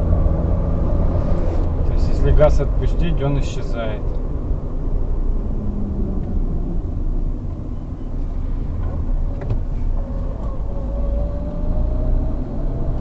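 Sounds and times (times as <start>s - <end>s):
car road and engine noise: 0.0s - 13.0s.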